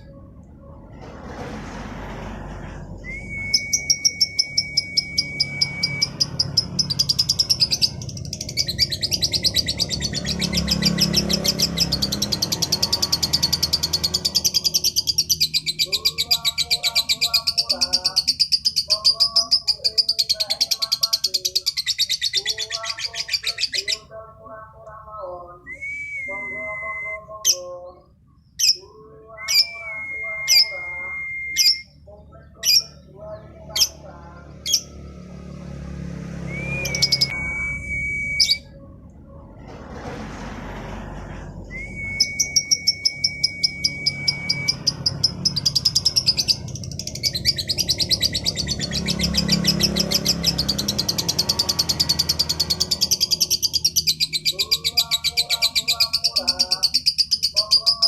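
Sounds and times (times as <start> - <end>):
lovebird trilling and calling: 3.4 - 24.1, 36.5 - 37.4, 42.2 - 58.0.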